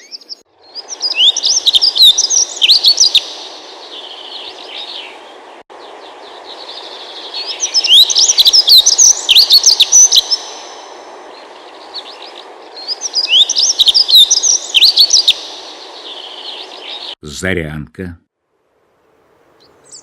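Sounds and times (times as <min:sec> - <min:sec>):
robin singing: 0:00.0 - 0:05.2, 0:05.8 - 0:10.8, 0:11.4 - 0:17.4, 0:19.6 - 0:20.0.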